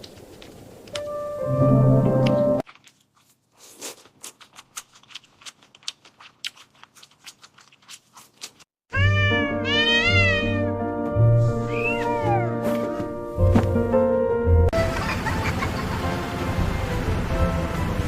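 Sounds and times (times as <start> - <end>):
music: 1.0 - 2.6, 9.0 - 18.0
cat meowing: 8.9 - 10.8, 11.6 - 12.6.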